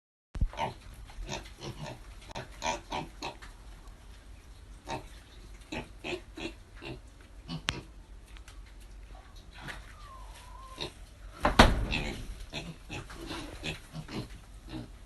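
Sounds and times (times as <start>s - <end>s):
pigs grunting: 0.5s - 3.4s, 4.8s - 8.0s, 9.4s - 11.1s, 11.8s - 15.0s.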